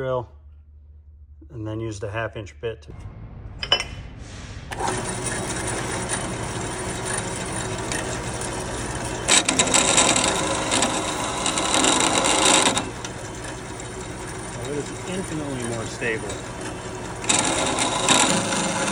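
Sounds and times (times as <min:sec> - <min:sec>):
bandsaw blade cutting workpiece: 0:04.7 - 0:18.9
bandsaw running: 0:04.7 - 0:18.9.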